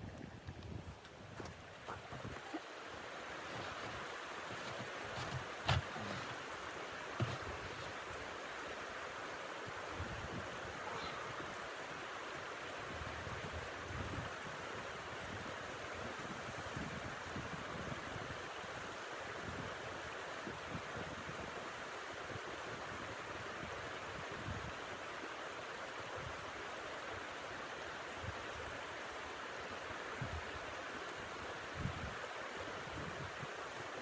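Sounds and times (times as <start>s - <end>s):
wind gusts buffeting microphone: 0.0s - 3.9s.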